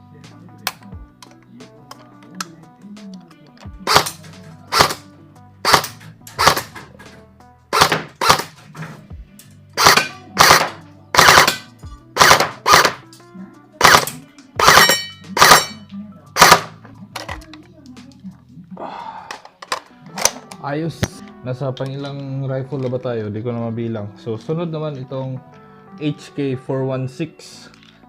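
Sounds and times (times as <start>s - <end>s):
airsoft rifle firing single shots: 3.8s - 5.0s, 5.6s - 6.8s, 7.7s - 8.6s, 9.8s - 13.0s, 13.8s - 15.8s, 16.4s - 16.7s.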